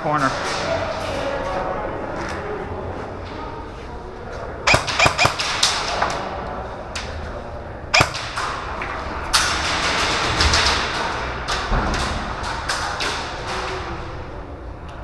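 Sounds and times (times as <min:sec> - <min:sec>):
airsoft guns firing: 0:04.7 - 0:06.0, 0:08.0 - 0:08.6
pellets striking walls: 0:08.0 - 0:08.6.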